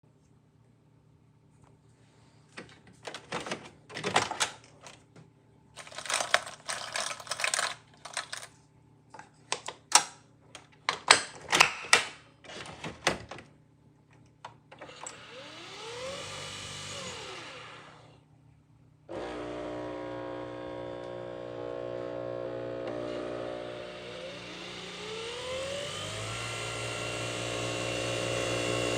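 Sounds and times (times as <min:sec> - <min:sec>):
coffee machine clicks and clatter: 0:05.8 - 0:08.5
coffee machine humming drone: 0:14.8 - 0:18.2, 0:19.1 - 0:28.9
motor whir: 0:14.8 - 0:18.2, 0:19.1 - 0:28.9.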